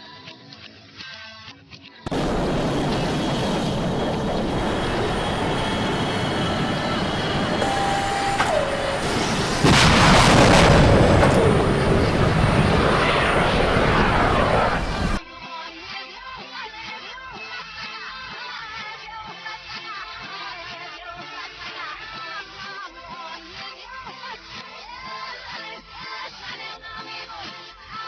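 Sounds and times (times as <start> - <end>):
jet aircraft rushing: 2.1 - 15.2.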